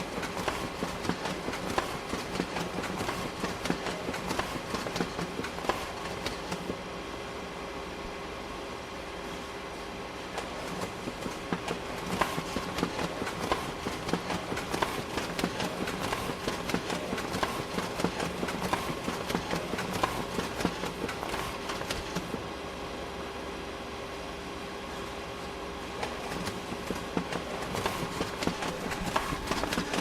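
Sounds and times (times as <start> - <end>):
printer clattering clicks: 0.0 - 6.8, 10.4 - 22.4, 26.0 - 30.0
printer hum: 0.0 - 30.0.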